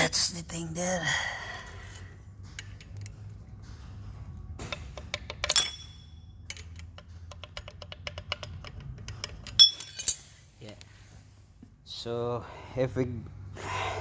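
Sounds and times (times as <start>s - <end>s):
ringing metal clink: 5.4s - 6.7s, 9.5s - 10.3s
hand tools clinking on metal: 5.4s - 6.8s.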